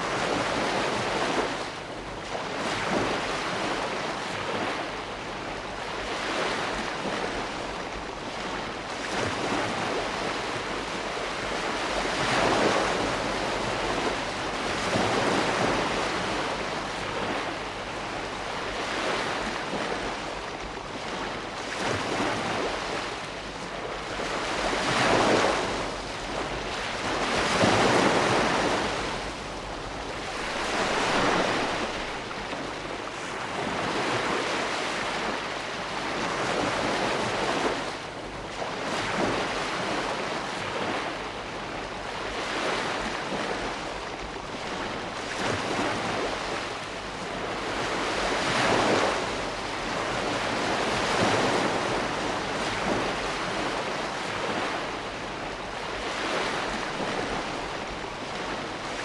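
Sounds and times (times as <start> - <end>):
ocean waves breaking: 0.0 - 59.0.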